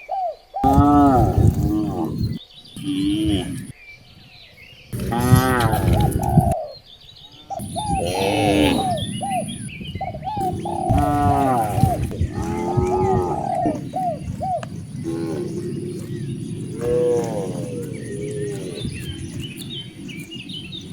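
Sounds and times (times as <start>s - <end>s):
cattle mooing: 0.6s - 3.7s, 5.0s - 6.6s, 7.6s - 9.7s, 10.4s - 20.0s
short chirping calls: 4.9s - 20.9s.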